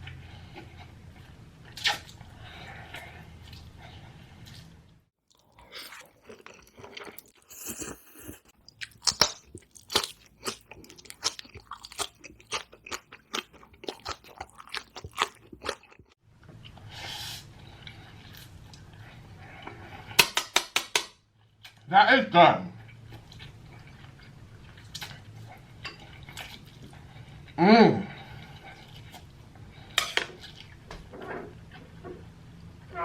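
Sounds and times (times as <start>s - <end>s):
loud crunching and chewing: 5.3s - 16.2s.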